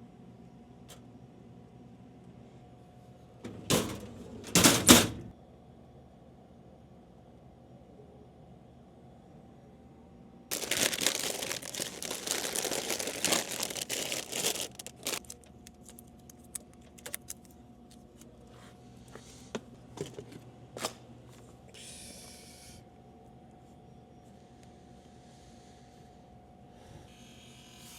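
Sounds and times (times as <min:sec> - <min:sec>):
plastic packaging crinkling and tearing: 0:10.5 - 0:18.2.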